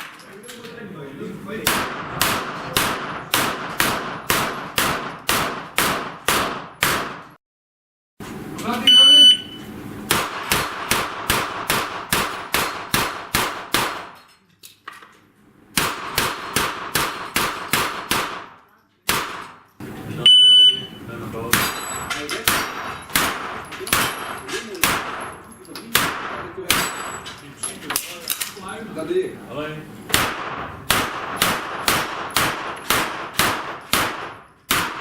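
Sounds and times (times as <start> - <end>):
pistol gunshots: 1.6 - 7.4, 10.1 - 14.2, 15.7 - 19.6, 22.4 - 27.1, 30.1 - 35.0
electronic timer beep: 8.9 - 9.6, 20.3 - 21.0
bullets clanging on steel plates: 21.5 - 28.6.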